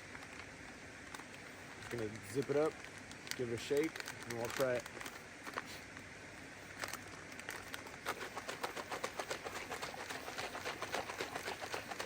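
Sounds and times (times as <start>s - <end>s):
plastic crinkles: 0.0s - 5.7s, 6.7s - 12.0s
plastic pouch being shaken: 1.8s - 5.2s, 6.8s - 12.0s.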